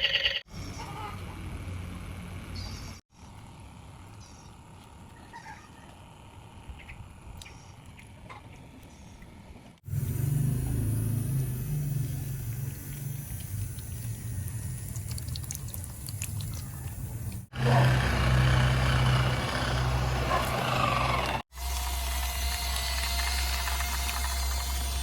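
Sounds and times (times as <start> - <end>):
small electric motors humming: 0.5 - 25.0
whirring and rattling: 9.9 - 25.0.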